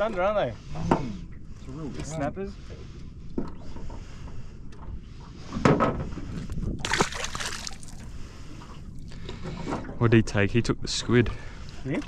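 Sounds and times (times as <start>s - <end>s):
water sloshing and splashing: 3.3s - 10.3s
loud sharp splash: 6.8s - 8.0s.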